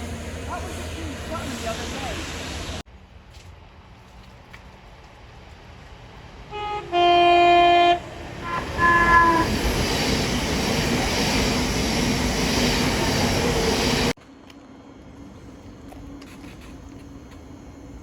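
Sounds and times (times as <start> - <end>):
train passing with loud rush: 0.0 - 4.0, 4.7 - 18.0
train horn: 6.5 - 9.5.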